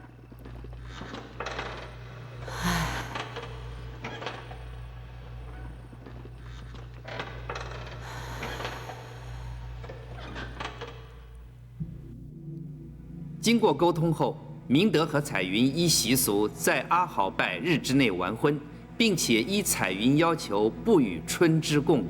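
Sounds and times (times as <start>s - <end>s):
steady low hum: 0.0s - 22.0s
clatter and scraping: 0.3s - 2.4s, 3.2s - 8.9s.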